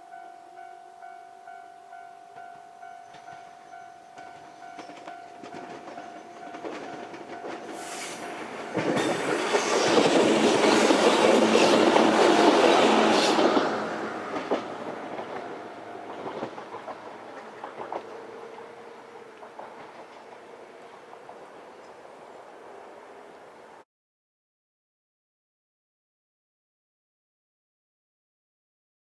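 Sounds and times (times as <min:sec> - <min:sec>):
level crossing warning bell: 0:00.0 - 0:10.4, 0:13.8 - 0:23.8
train wheels clattering over rails: 0:03.1 - 0:23.8.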